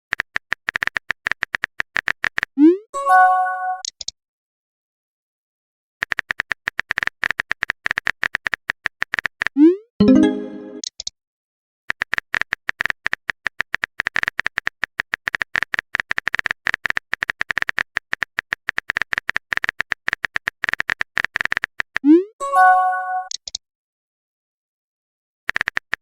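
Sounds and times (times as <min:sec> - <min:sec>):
keyboard typing clicks: 0:03.8 - 0:04.1, 0:23.2 - 0:23.6.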